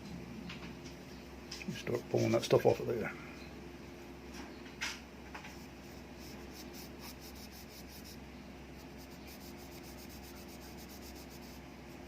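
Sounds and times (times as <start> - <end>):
low electrical hum: 0.0 - 12.0
cloth rubbing on metal: 2.1 - 2.5, 8.8 - 11.6.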